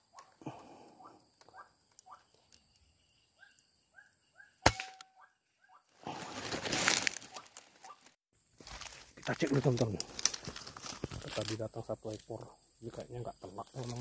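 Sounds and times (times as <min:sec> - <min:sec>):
bird calls: 0:00.1 - 0:05.9
air rifle shot: 0:04.6 - 0:05.0
rustling through dry vegetation: 0:05.8 - 0:14.0.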